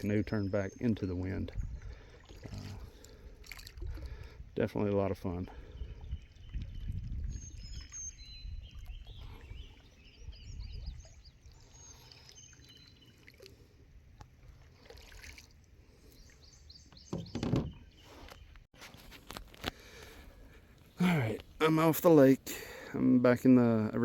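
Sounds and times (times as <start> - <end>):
small birds chirping: 0.0 - 3.4, 4.2 - 13.8, 15.8 - 18.7
wind rumbling on microphone: 1.5 - 3.0, 5.5 - 11.3.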